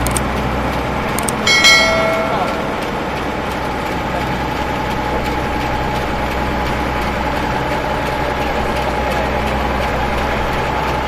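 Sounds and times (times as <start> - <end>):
heavy engine droning: 0.0 - 11.0
high whine: 1.4 - 6.2.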